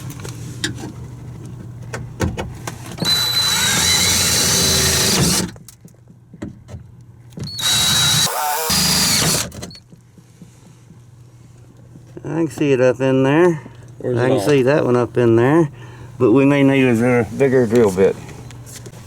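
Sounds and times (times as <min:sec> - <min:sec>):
power drill boring through sheet metal: 0:03.0 - 0:05.5, 0:07.5 - 0:09.8.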